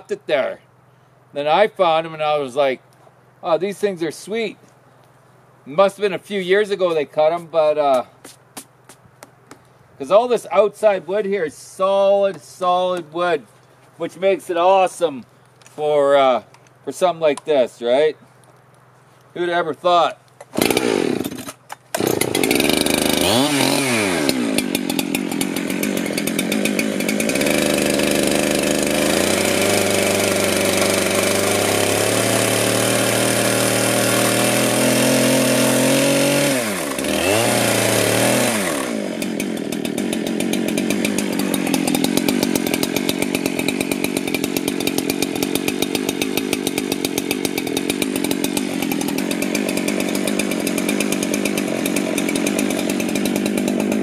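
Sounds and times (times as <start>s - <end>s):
chainsaw cutting log: 20.0s - 54.0s.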